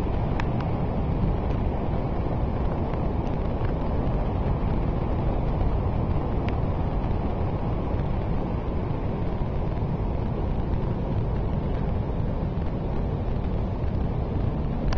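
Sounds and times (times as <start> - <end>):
wind buffeting microphone: 0.0 - 14.9.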